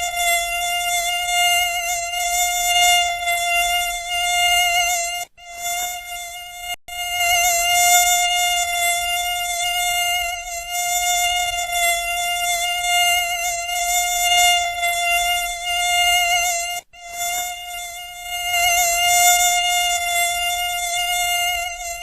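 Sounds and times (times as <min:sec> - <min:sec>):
mosquito wingbeat whine: 0:00.0 - 0:22.0.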